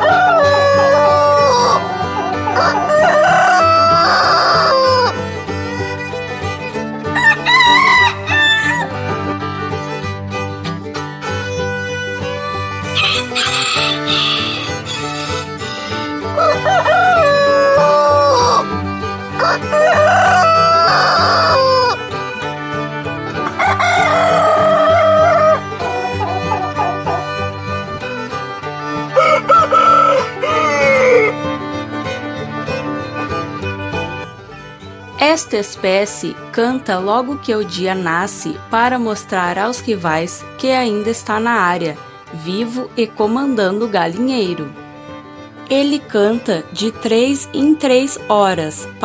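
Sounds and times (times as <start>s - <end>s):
roosters crowing: 0.0s - 5.2s, 7.1s - 9.0s, 12.9s - 15.6s, 16.3s - 22.0s, 23.4s - 27.4s, 29.1s - 31.4s
background music: 0.0s - 49.0s.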